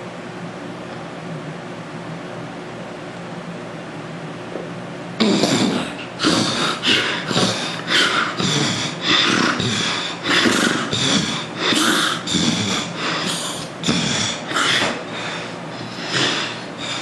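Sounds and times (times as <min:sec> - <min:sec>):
person snoring and snorting: 0:05.2 - 0:17.0.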